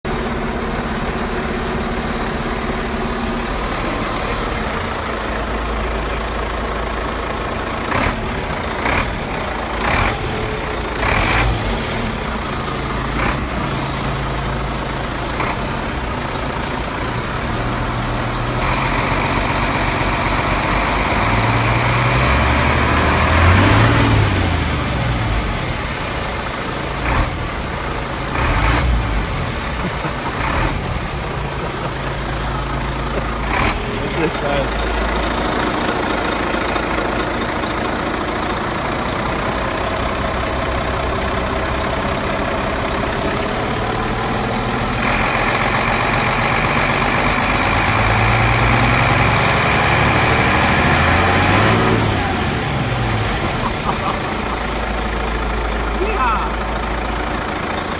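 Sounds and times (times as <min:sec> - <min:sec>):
diesel truck engine idling: 0:00.0 - 0:57.9
turbocharger whistle: 0:07.9 - 0:37.1.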